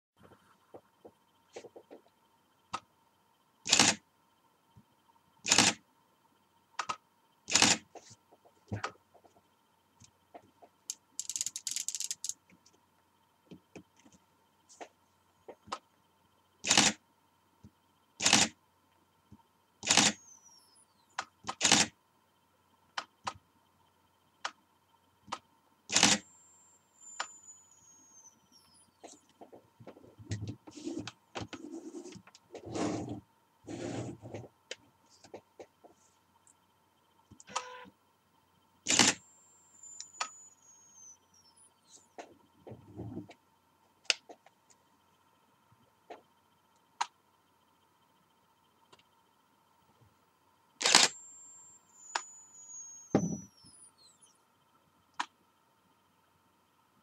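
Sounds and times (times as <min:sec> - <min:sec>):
faint steady whine: 0:00.2 - 0:57.0
high whistle gliding down: 0:51.3 - 0:54.4.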